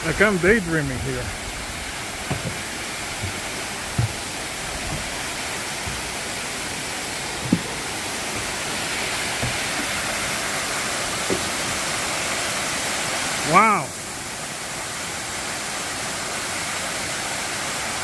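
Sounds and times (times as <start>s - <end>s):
waterfall rushing: 0.0s - 18.0s
faint soft thumps: 2.2s - 6.2s, 7.4s - 8.6s, 9.3s - 10.0s.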